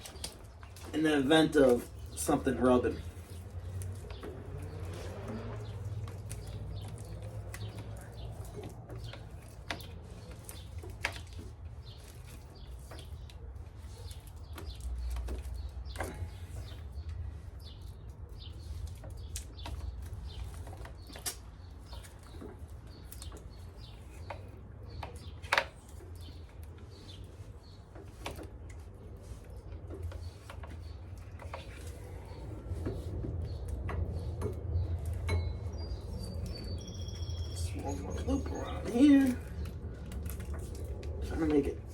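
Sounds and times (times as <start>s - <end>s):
clicks and taps from handling wires: 18.9s - 26.8s.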